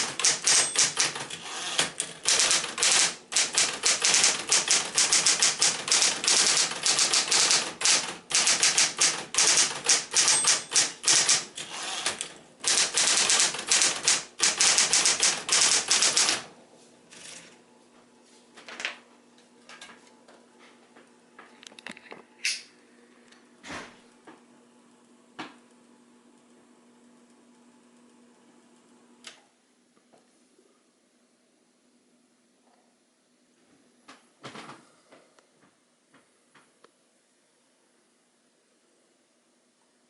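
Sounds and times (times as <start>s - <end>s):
electric typewriter typing fast: 0.0s - 16.5s
scattered clicks: 0.1s - 16.4s.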